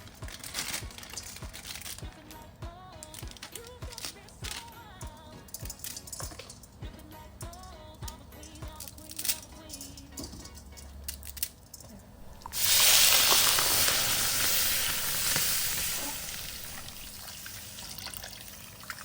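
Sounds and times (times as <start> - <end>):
food sizzling in hot pan: 12.2 - 19.0.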